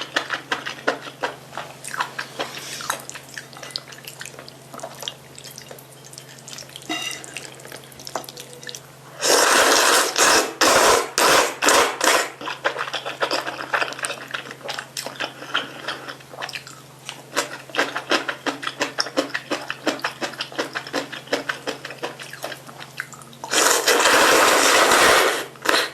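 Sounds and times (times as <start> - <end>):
wet chewing: 0.0 - 10.3, 11.7 - 24.9
slurping noodles: 1.9 - 3.5, 9.2 - 16.2, 23.4 - 25.9.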